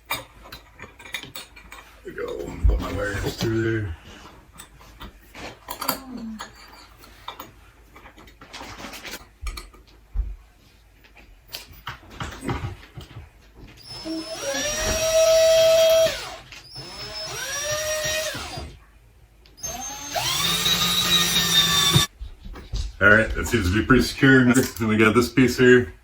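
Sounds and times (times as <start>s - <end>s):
handling knocks and clicks: 0.0s - 3.5s
power drill whining: 13.8s - 18.8s, 19.6s - 22.1s.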